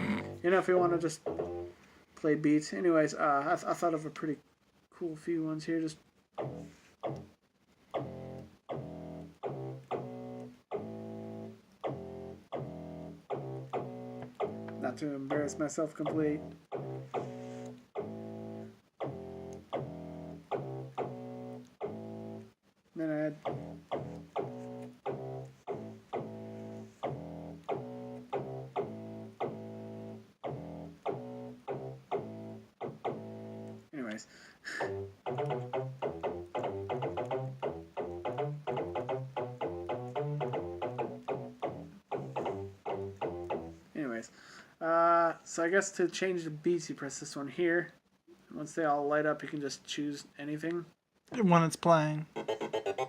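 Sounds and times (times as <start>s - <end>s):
synthesizer melody: 8.0s - 22.6s, 23.4s - 33.9s, 34.8s - 43.8s.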